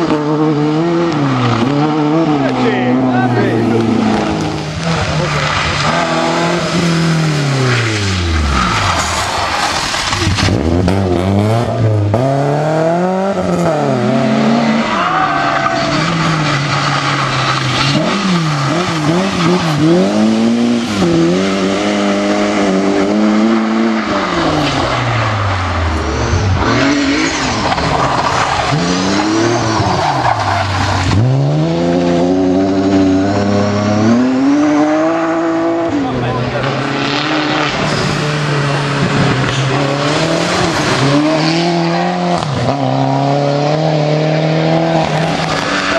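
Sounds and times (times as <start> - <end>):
rally car engine revving: 0.0 - 45.9.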